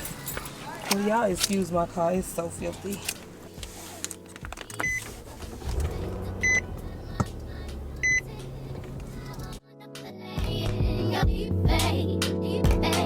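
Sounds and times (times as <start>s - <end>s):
car warning chime beeping: 4.8s - 5.1s, 5.7s - 9.5s
car running low hum: 4.8s - 9.6s.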